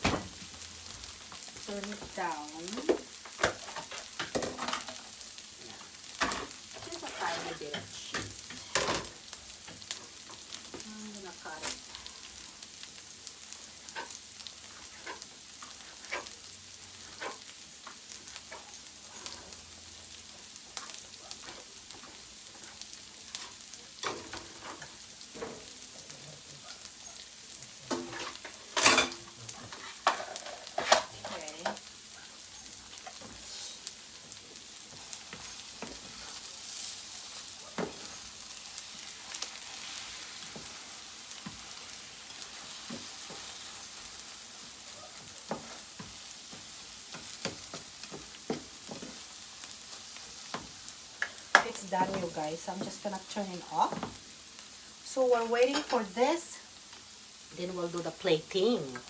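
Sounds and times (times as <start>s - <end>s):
food sizzling in a pan: 0.0s - 59.0s
spatula tapping and scraping on a pan: 17.0s - 19.5s, 34.9s - 38.6s, 45.2s - 53.0s, 53.8s - 54.3s.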